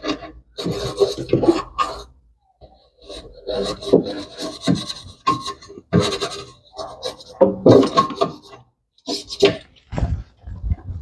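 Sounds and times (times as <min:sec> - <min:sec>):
rasping rubbing strokes: 0:03.0 - 0:09.7.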